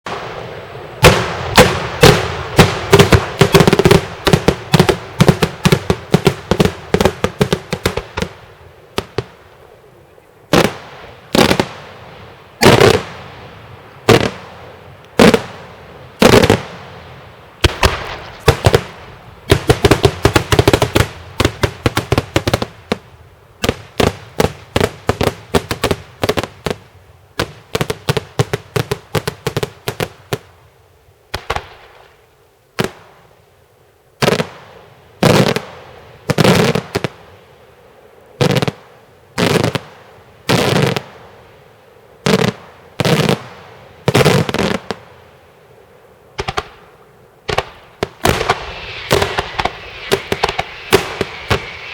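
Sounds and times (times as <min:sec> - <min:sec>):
fireworks bursting in bangs: 0:00.1 - 0:08.4, 0:10.5 - 0:14.6, 0:15.2 - 0:16.9, 0:17.6 - 0:26.8, 0:31.3 - 0:32.1, 0:34.2 - 0:37.2, 0:42.2 - 0:45.0, 0:46.4 - 0:46.8, 0:47.5 - 0:51.9.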